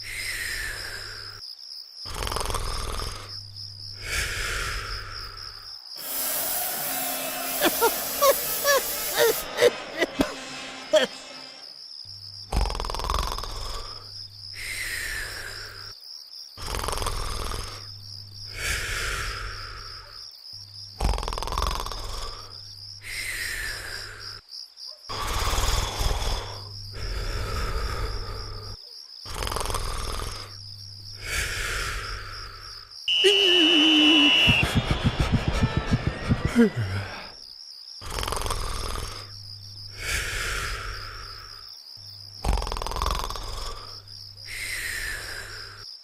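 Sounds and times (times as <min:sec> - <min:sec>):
cartoon snoring with falling whistle: 0:02.1 - 0:03.4, 0:06.0 - 0:09.7, 0:12.5 - 0:15.8, 0:16.6 - 0:17.9, 0:21.0 - 0:22.5, 0:25.1 - 0:28.6, 0:29.3 - 0:30.6, 0:33.1 - 0:34.8, 0:38.0 - 0:39.4, 0:42.4 - 0:44.0.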